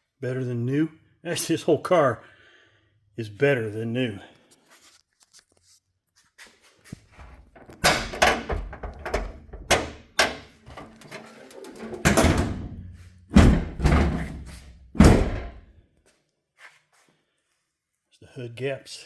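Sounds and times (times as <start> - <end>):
car hood closing thuds: 12.0 - 15.6.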